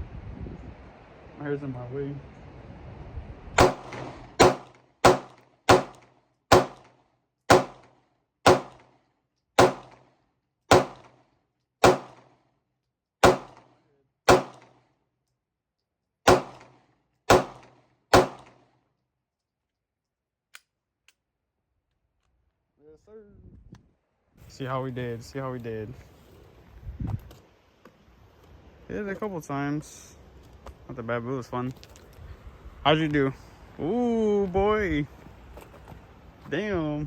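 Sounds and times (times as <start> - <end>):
handgun shots with echo: 3.6 - 6.9, 7.5 - 7.9, 8.5 - 8.9, 9.6 - 10.0, 10.7 - 11.2, 11.8 - 12.3, 13.2 - 13.7, 14.3 - 14.8, 16.3 - 18.6.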